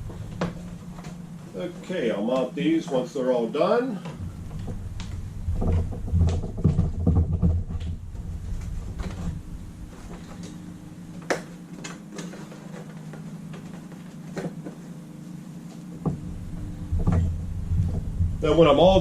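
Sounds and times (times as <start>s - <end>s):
low handling rumble: 0.0s - 19.0s.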